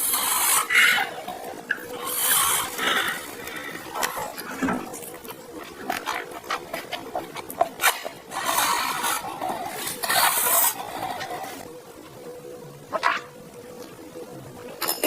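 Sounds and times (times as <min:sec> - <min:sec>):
slurping noodles: 0:00.0 - 0:11.7.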